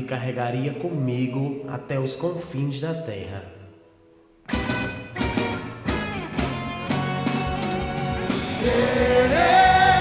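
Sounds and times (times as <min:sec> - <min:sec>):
regular drum hits: 0:04.5 - 0:10.0
person singing: 0:08.6 - 0:10.0.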